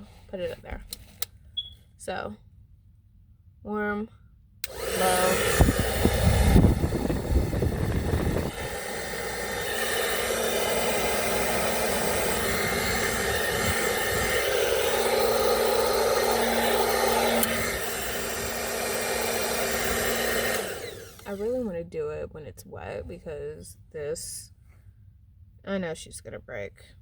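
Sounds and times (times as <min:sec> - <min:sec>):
hair dryer blowing: 0:04.6 - 0:21.6.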